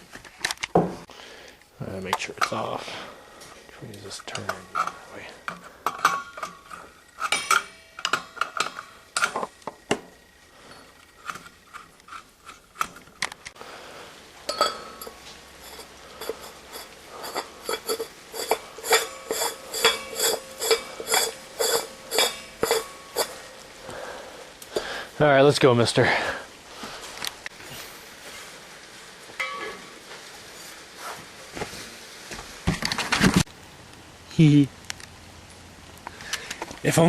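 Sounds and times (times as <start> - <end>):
metal gas cylinder clinking: 4.3 - 9.5, 14.4 - 25.1, 29.4 - 30.0.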